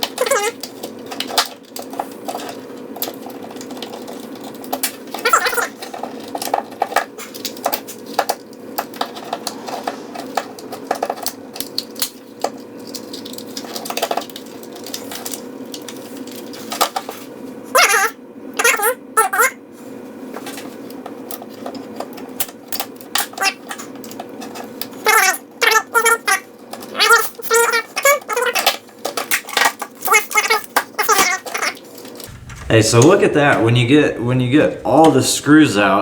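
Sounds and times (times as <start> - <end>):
plastic parts clattering: 0.0 - 17.3, 26.7 - 32.7
steady low hum: 32.2 - 36.0.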